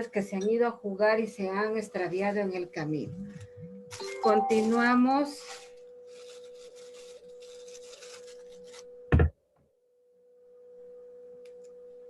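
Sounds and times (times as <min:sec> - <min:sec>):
electrical tone with hiss: 0:02.1 - 0:08.8.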